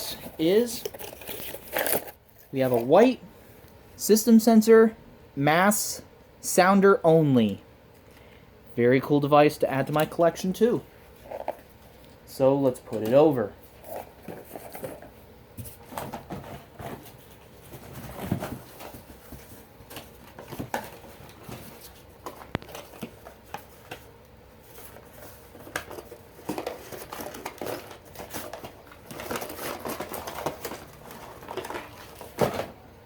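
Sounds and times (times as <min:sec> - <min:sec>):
packing rustling and crinkling: 0:00.0 - 0:02.9, 0:13.6 - 0:32.8.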